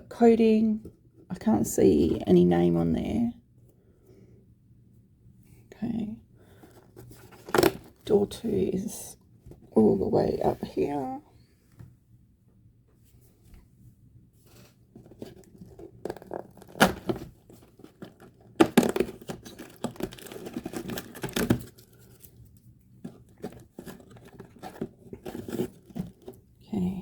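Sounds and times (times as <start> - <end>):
cardboard tearing: 7.3 - 8.0, 15.1 - 22.1, 23.2 - 26.4
paper crinkling: 14.5 - 26.4.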